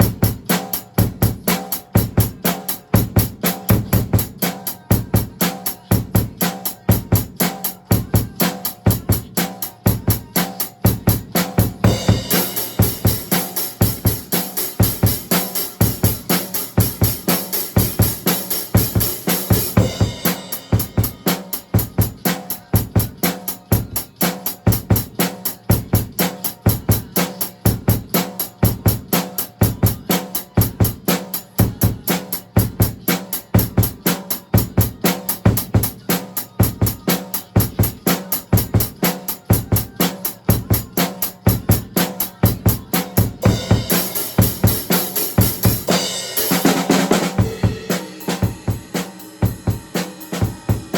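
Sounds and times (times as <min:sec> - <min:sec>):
drum kit groove: 0:00.0 - 0:50.9
crash cymbal ringing: 0:47.4 - 0:50.9.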